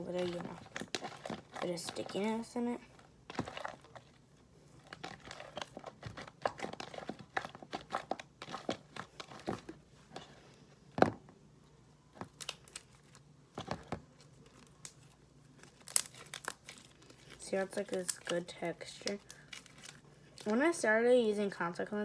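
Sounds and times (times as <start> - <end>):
slime crackling and popping: 14.4 - 20.6.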